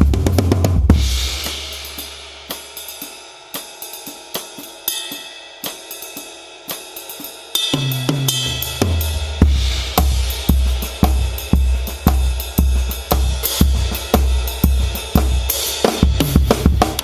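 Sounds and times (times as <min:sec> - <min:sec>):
toms and bass drum groove: 0:00.0 - 0:17.0
light cymbal and hi-hat strokes: 0:00.9 - 0:17.0.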